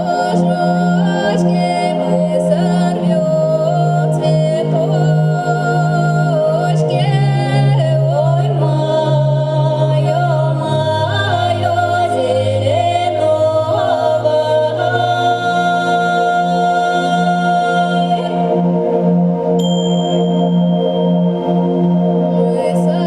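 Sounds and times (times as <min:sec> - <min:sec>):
person singing: 0:00.0 - 0:18.6, 0:22.3 - 0:23.0
low drone notes: 0:00.0 - 0:23.0.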